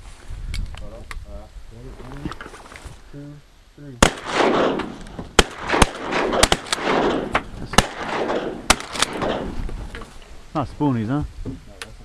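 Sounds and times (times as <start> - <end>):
shotgun blasts with echo: 4.0 - 9.8.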